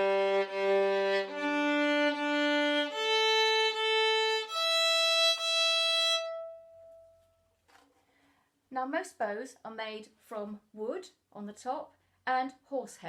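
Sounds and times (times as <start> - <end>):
violin open strings bowed: 0.0 - 7.2.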